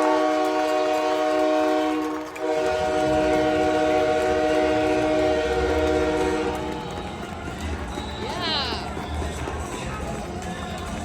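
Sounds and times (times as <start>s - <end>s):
arena goal horn blowing: 0.0s - 7.0s.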